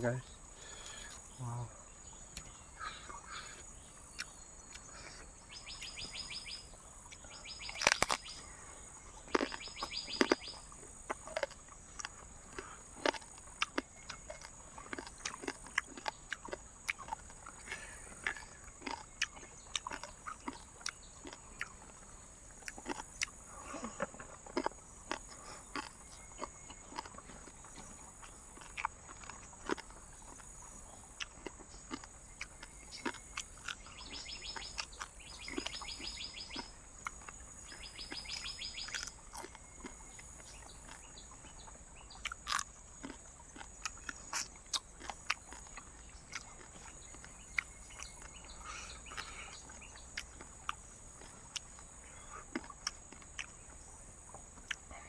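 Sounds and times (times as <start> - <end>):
insects droning: 0.0 - 55.0
insect rattling trills: 31.3 - 54.6.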